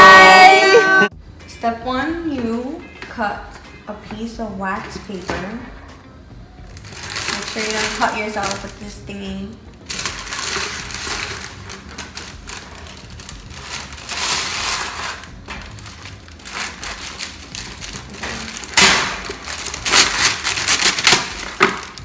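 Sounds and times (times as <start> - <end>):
wax paper crinkling and tearing: 6.7 - 9.1, 9.8 - 22.0.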